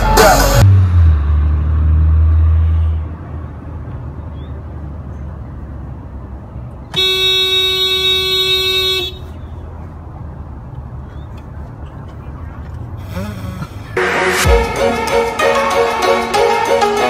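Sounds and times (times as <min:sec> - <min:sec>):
loud low drone: 0:00.0 - 0:03.3
air horn blast: 0:06.9 - 0:09.4.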